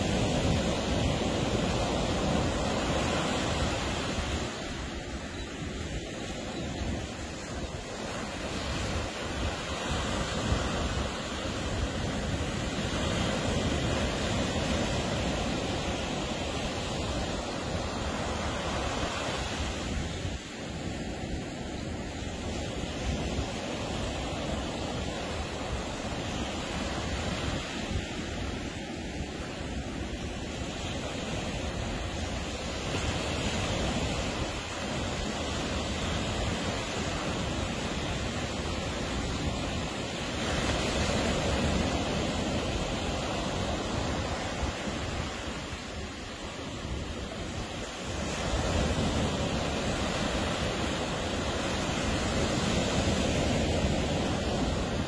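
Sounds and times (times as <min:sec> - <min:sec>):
surf breaking on a beach: 0:00.0 - 0:55.0.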